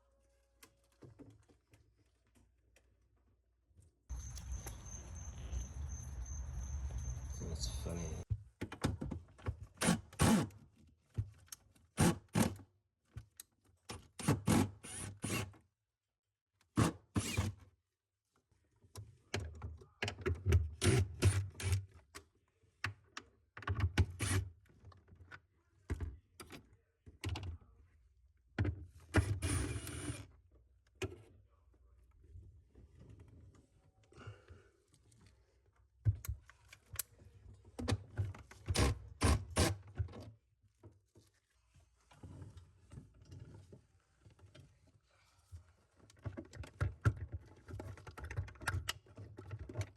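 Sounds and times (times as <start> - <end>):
knocks and clunks on plastic parts: 8.3 - 9.8.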